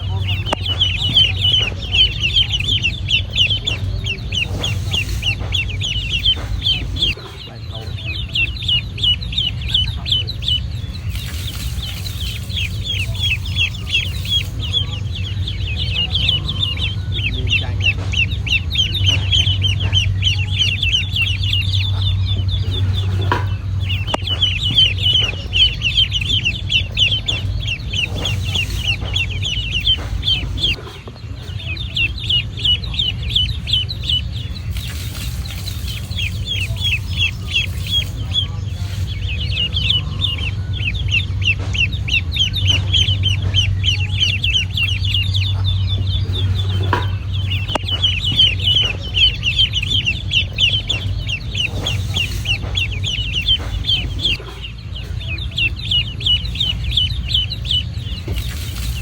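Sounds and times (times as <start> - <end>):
ducklings peeping: 0.0 - 59.0
steady low hum: 0.0 - 59.0.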